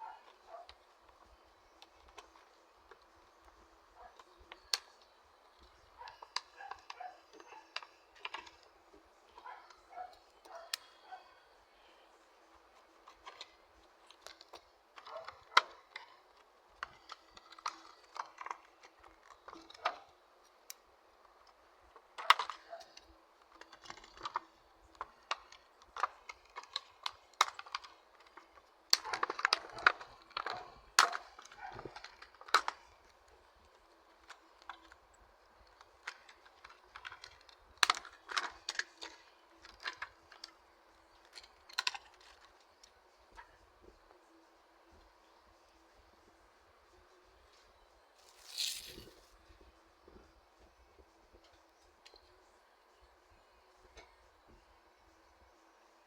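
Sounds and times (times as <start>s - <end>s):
plastic packaging clicks and crinkling: 13.1s - 20.1s, 22.0s - 35.0s, 35.6s - 40.6s, 48.2s - 49.3s.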